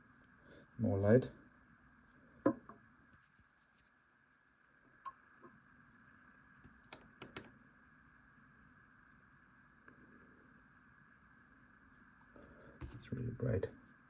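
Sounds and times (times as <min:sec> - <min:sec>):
soft tool clicks: 0:06.8 - 0:07.5.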